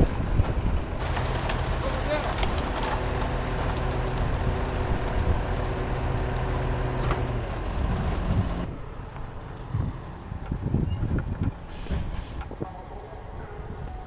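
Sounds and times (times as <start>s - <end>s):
vehicle engine running: 1.0s - 8.7s.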